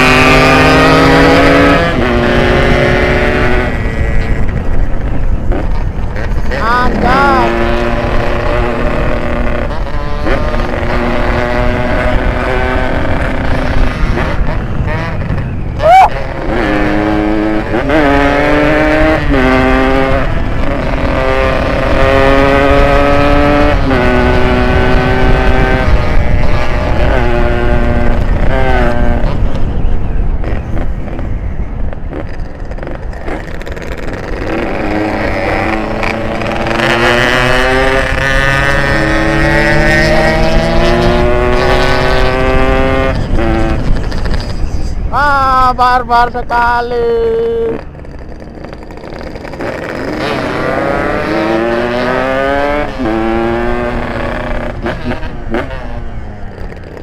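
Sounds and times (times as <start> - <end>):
two-stroke motorcycle accelerating: 0.0 - 57.0
wind and road rumble: 0.0 - 57.0.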